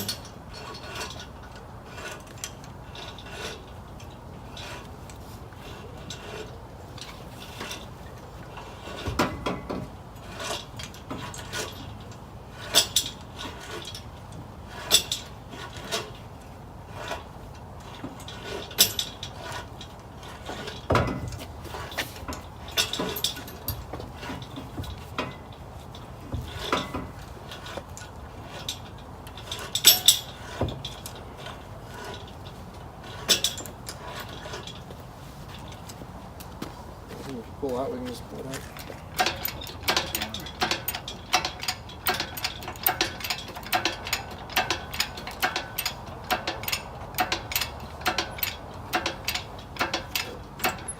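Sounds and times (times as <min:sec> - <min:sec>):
hand tools clinking and clanking: 0:17.0 - 0:50.9.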